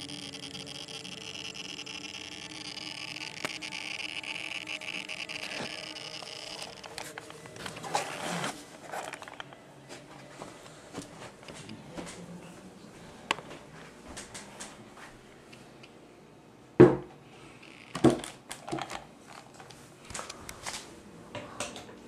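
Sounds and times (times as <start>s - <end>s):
toy truck steady buzz: 0.0s - 9.4s, 17.6s - 18.3s
clicks and scraping: 0.0s - 9.6s.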